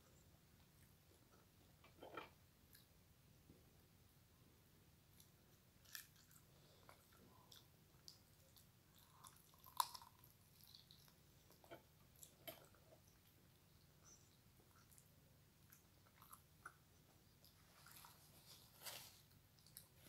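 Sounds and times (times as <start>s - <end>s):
person chewing: 5.2s - 13.3s.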